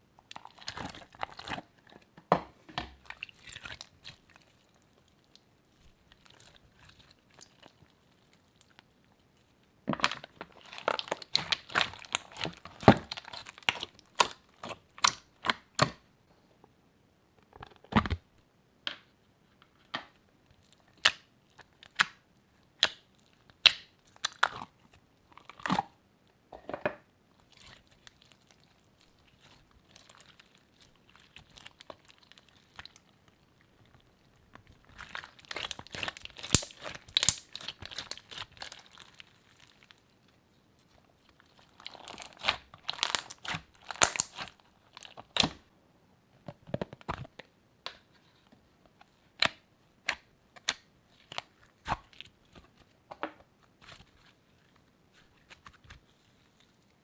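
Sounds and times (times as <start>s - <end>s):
slime popping and crackling: 9.9s - 16.0s, 22.8s - 24.8s, 34.1s - 40.0s, 41.4s - 45.7s.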